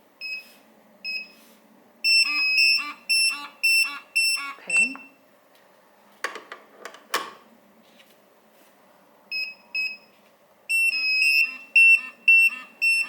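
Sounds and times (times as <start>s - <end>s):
pager high beeps: 2.1s - 5.2s, 10.7s - 13.0s.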